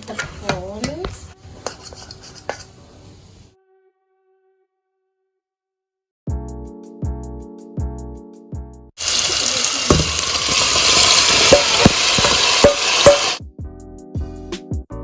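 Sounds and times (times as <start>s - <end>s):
utensil clacking on pan: 0.0s - 2.8s, 9.8s - 13.4s
prawns sizzling in oil: 9.0s - 13.4s
background music: 9.9s - 15.0s.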